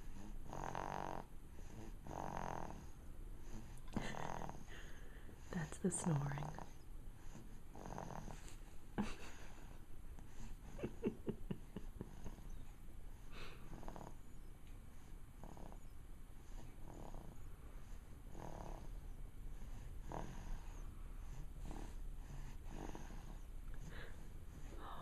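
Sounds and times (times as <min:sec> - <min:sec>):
snoring: 0:00.0 - 0:05.7, 0:06.3 - 0:08.4, 0:12.0 - 0:12.6, 0:13.4 - 0:14.2, 0:15.4 - 0:25.0.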